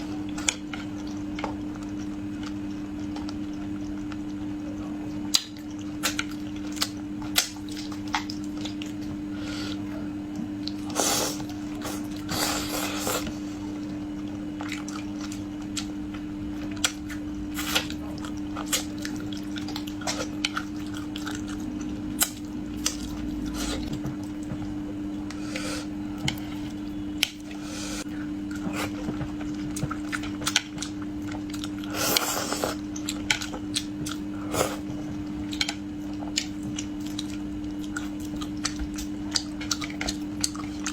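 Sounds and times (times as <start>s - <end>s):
low hum: 7.8s - 38.9s.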